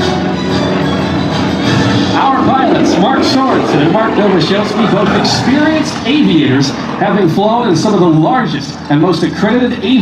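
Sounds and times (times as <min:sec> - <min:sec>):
loud music: 0:00.2 - 0:06.0.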